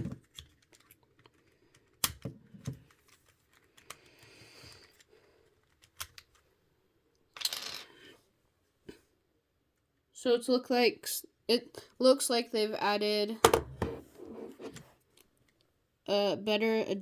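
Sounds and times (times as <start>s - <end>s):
plastic scrape: 13.7s - 15.0s.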